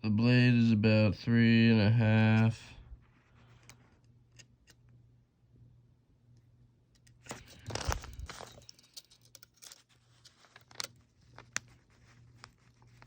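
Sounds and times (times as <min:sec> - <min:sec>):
pocket knife handling noise: 0:03.6 - 0:04.9, 0:07.0 - 0:11.8.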